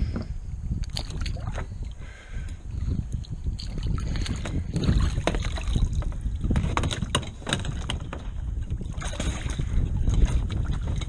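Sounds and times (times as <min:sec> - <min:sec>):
water sloshing and splashing: 0:00.0 - 0:11.0
wind rumbling on microphone: 0:00.0 - 0:11.0.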